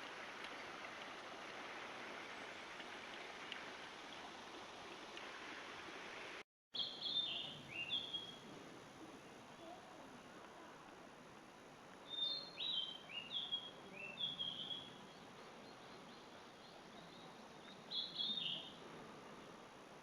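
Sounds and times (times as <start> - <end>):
faint steady hiss: 0.0 - 20.0
songbird whistling: 6.8 - 8.4, 12.1 - 14.9.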